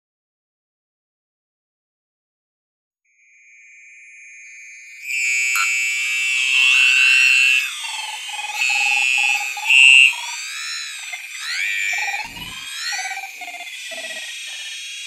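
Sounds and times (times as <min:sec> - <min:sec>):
shrill wavering oscillator tones: 0:05.0 - 0:15.0.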